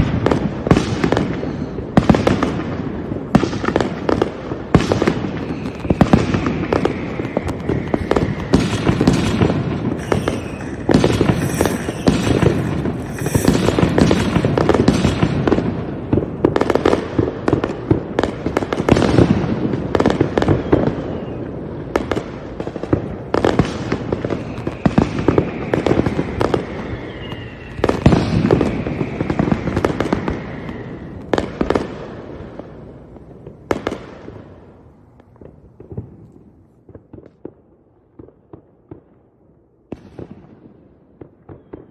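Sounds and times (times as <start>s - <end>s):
falling firework whistle: 0.0s - 2.4s, 4.9s - 15.8s, 20.1s - 21.6s, 23.4s - 36.5s, 41.4s - 41.9s
high firework crackling: 0.0s - 38.7s
fireworks bangs and booms: 0.0s - 41.9s.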